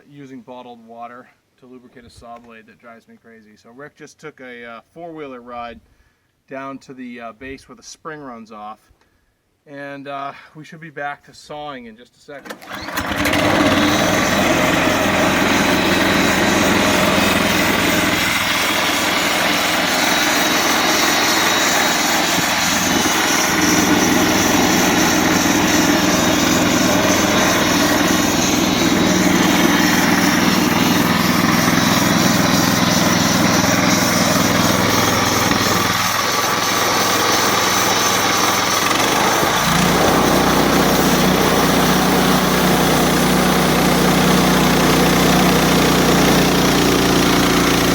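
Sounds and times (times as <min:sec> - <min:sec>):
small gasoline engine running: 0:12.5 - 0:47.9.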